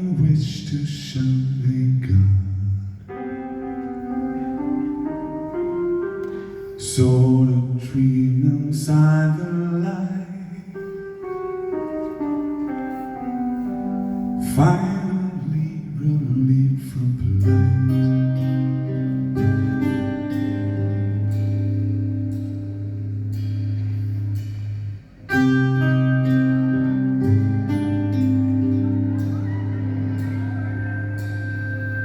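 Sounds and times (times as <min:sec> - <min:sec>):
live band playing slow rock: 0:02.7 - 0:32.0
low bass line: 0:14.4 - 0:32.0.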